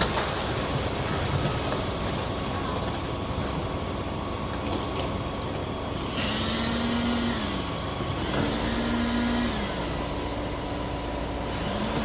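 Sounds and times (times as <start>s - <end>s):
heavy machine engine revving: 5.8s - 12.0s.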